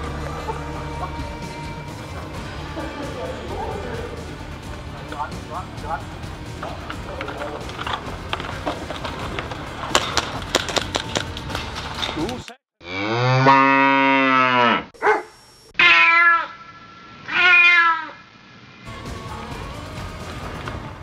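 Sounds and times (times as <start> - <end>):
rapid clicks and knocks: 6.8 - 12.4.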